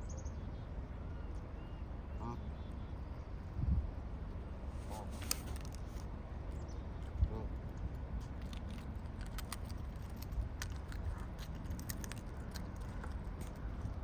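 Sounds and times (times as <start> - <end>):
steady low rumble: 0.0 - 14.0
birds pecking chip packet: 4.9 - 6.1, 8.2 - 14.0.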